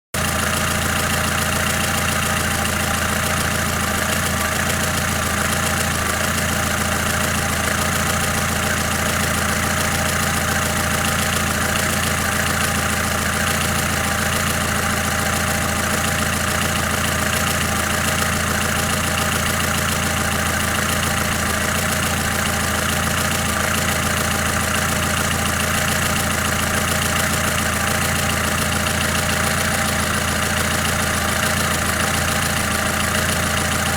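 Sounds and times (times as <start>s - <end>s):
car engine idling: 0.1s - 33.9s.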